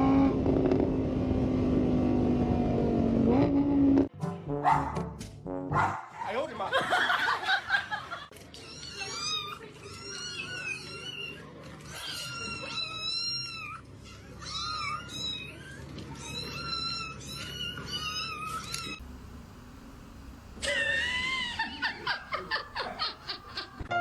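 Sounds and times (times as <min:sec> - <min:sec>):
cat meowing: 0:08.6 - 0:19.0.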